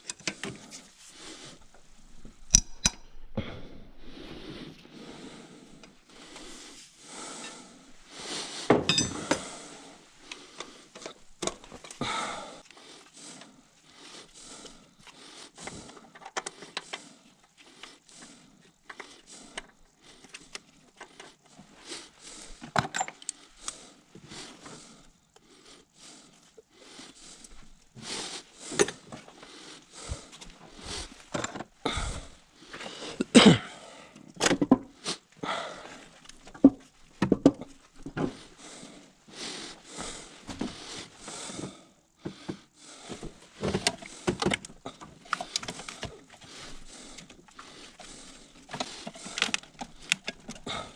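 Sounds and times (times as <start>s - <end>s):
metal tools and bolts clinking: 8.8s - 9.4s.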